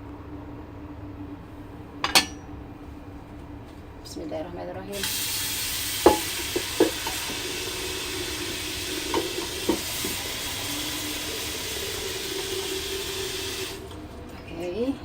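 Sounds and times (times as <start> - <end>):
tap water running into pot: 5.0 - 14.2
pot knocking: 6.0 - 7.4, 9.1 - 10.2.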